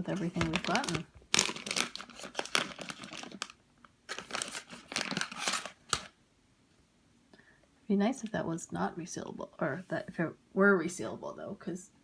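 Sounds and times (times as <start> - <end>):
plastic packaging crinkling: 0.0 - 6.2.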